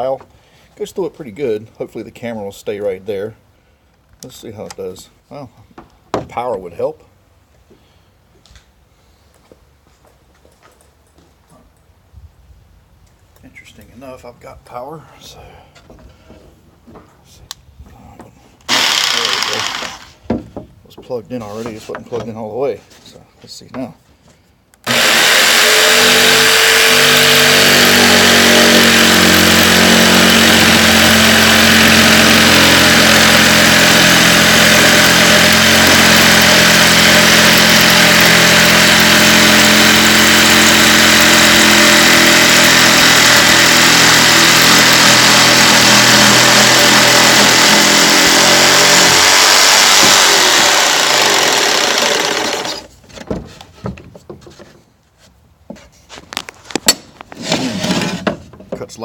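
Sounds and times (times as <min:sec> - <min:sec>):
jigsaw cutting board: 0:18.7 - 0:20.2, 0:24.8 - 0:52.9, 0:57.4 - 0:58.3.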